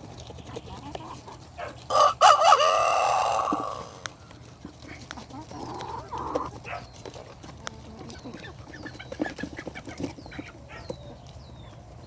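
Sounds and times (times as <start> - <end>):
chickens clucking: 0.0 - 12.0
rooster crowing: 1.9 - 4.0.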